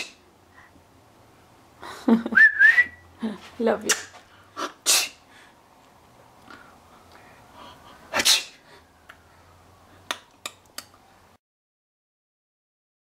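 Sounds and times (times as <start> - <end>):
short sharp clicks: 3.9 - 4.2
man fake sneezing: 3.9 - 5.2, 8.1 - 8.6.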